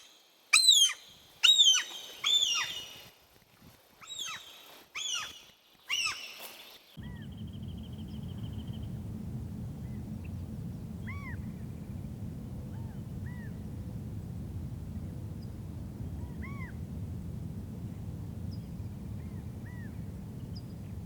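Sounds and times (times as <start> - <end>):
low rumble: 7.0 - 21.0.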